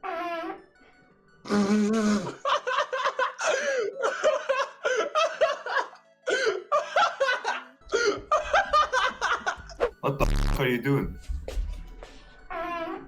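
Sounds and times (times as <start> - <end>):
person laughing: 2.0 - 6.0, 6.8 - 9.8
buzzing fart sound: 10.2 - 10.7.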